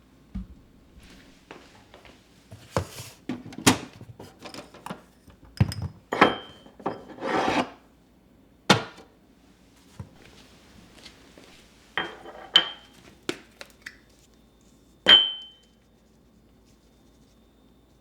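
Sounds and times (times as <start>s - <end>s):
rubbing and scraping: 7.1s - 7.8s
ringing clink: 15.1s - 15.6s.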